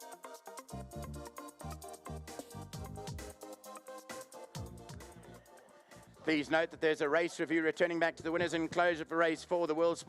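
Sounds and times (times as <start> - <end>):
electronic music with bass: 0.0 - 6.5.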